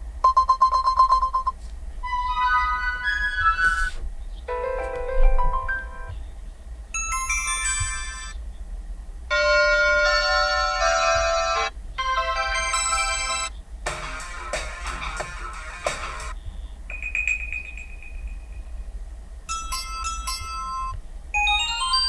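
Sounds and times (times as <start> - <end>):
electronic ringtone tunes: 0.3 - 3.9, 7.0 - 8.3, 9.3 - 16.3, 19.5 - 22.0
clicking percussive beat: 13.9 - 18.3.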